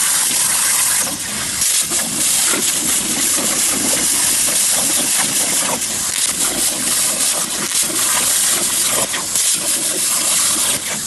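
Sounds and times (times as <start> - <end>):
plasma torch hissing: 0.0 - 11.0.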